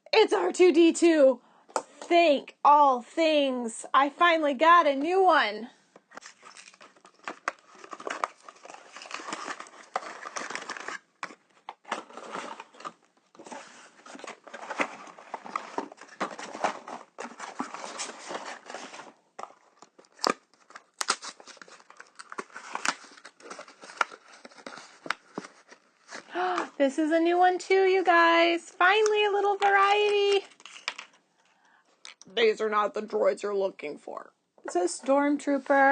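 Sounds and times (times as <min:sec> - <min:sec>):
packaging crinkling and tearing: 0:06.1 - 0:26.5, 0:30.1 - 0:31.2.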